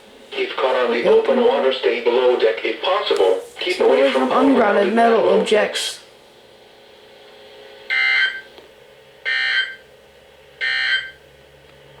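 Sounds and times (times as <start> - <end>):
digital data tone bursts: 9.3 - 9.8, 10.6 - 11.2.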